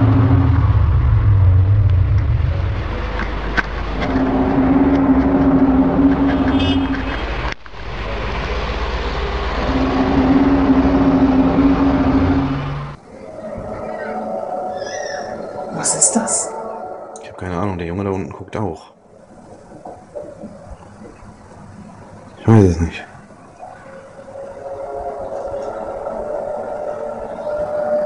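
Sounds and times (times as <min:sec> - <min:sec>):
eerie droning hum: 0:00.0 - 0:28.0
low rumble: 0:00.0 - 0:28.0.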